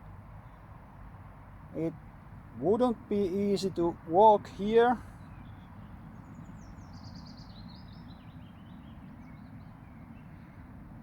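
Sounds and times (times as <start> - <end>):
distant road traffic hum: 0.0 - 11.0.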